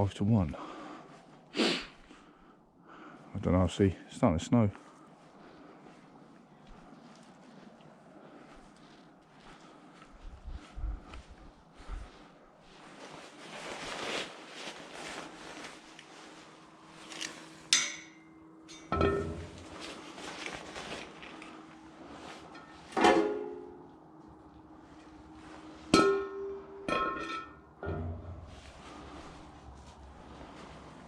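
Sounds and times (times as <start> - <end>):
metal objects clanking: 17.7 - 19.8, 22.5 - 23.8, 25.9 - 28.5.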